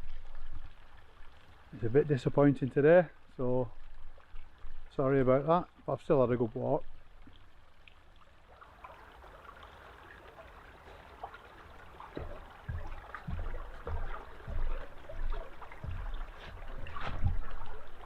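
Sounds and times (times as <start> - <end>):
footsteps on woodland path: 11.8 - 18.0.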